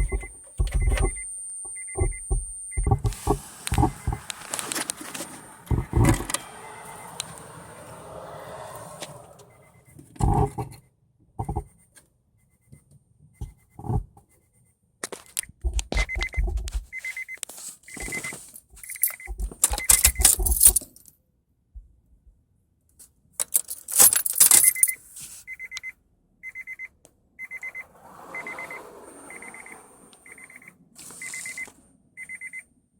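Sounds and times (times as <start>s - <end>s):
subwoofer crackling and popping: 0.0s - 4.6s
short high beep: 27.4s - 32.6s.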